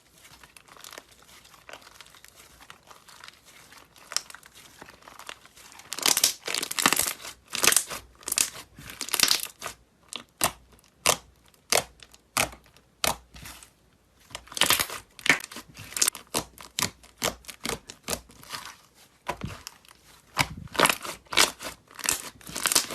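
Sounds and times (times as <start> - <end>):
slime crackling when squeezed: 0.6 - 13.2.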